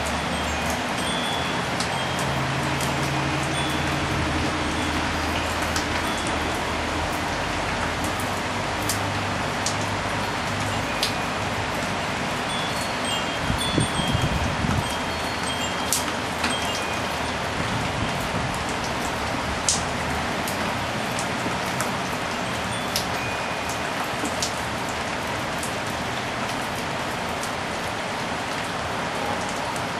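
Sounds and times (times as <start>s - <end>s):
rain shower hiss: 0.0s - 29.9s
sharp drip-like tick: 1.8s - 4.0s, 4.7s - 12.6s, 15.4s - 17.3s, 18.2s - 25.0s.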